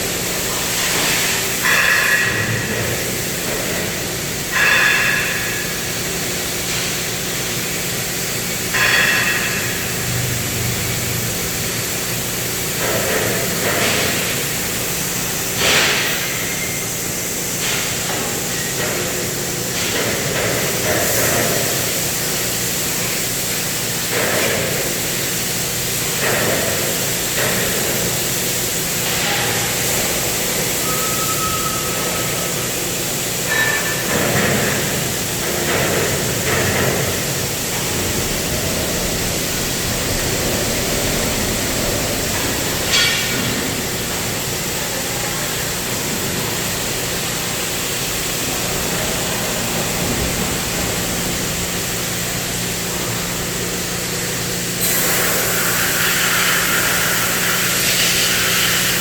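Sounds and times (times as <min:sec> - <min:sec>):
cutting torch hissing: 0:54.8 - 0:59.0.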